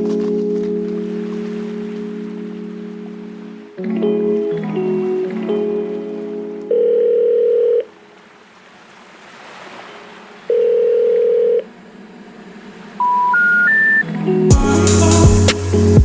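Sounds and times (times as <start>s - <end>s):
telephone ringing tones: 6.7s - 8.0s, 10.5s - 11.6s
rising short beeps: 13.0s - 14.1s.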